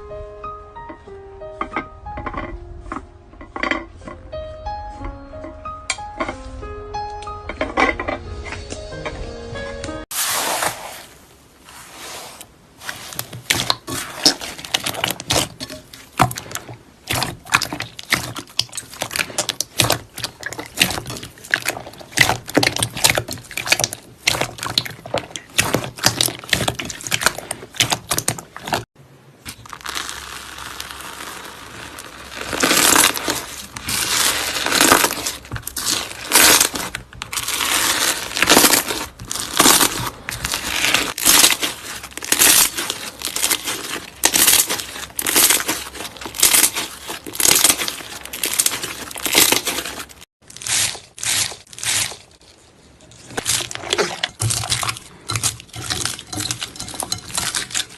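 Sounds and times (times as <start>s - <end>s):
slime crackling and popping: 12.8s - 57.9s.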